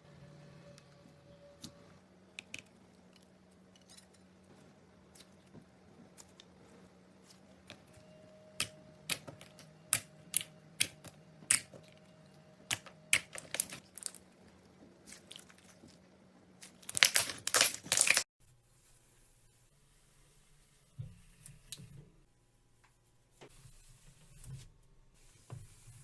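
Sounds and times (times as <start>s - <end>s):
crackling pops: 16.6s - 18.2s.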